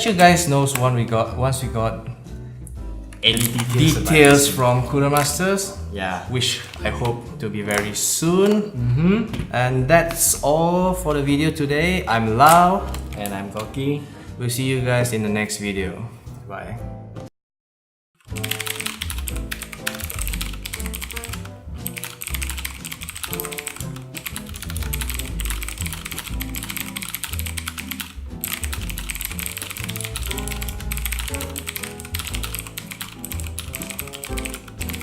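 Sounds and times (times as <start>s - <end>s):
relaxed lounge music: 0.0s - 17.3s, 18.3s - 35.0s
rapid typing on mechanical keyboard: 18.2s - 35.0s.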